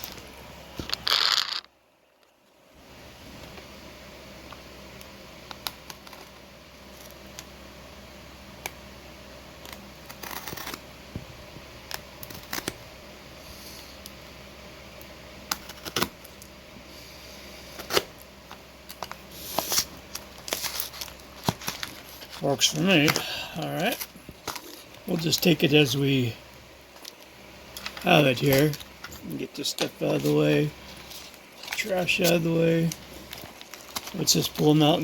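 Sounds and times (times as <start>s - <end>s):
steady low hum: 0.0s - 35.0s
cardboard rustling and scraping: 19.0s - 25.6s, 27.8s - 35.0s.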